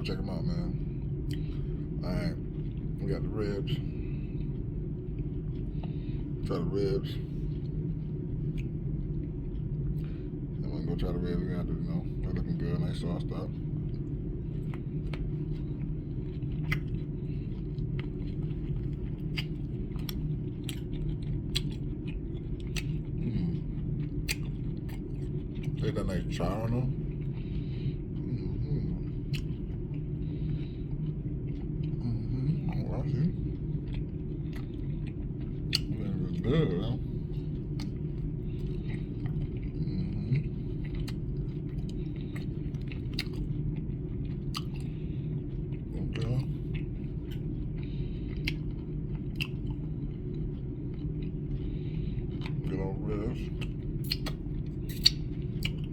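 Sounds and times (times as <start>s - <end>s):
steady low hum: 0.0s - 55.9s
person chewing with mouth clicks: 1.2s - 1.7s, 8.5s - 10.2s, 13.9s - 55.9s
lip smacks: 16.4s - 17.0s, 18.9s - 21.9s, 24.2s - 25.8s, 29.2s - 29.6s, 35.6s - 36.0s, 37.7s - 43.5s, 44.5s - 44.9s, 48.4s - 48.7s, 49.3s - 49.8s, 53.5s - 55.9s.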